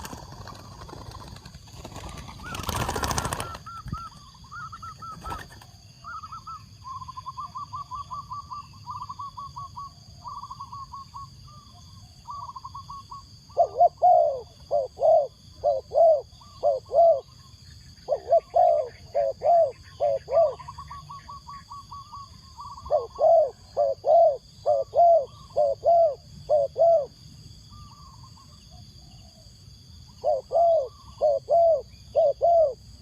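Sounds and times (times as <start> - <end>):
dove cooing: 0.0 - 11.0, 12.3 - 17.4, 18.1 - 27.2, 30.1 - 32.9
bird chirping: 2.1 - 33.0.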